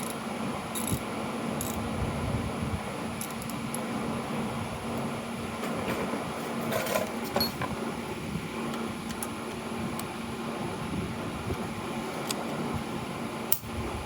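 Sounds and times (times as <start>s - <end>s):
tools and metal parts clinking: 0.0s - 1.0s, 5.6s - 7.7s
fan-like hum: 0.0s - 14.0s.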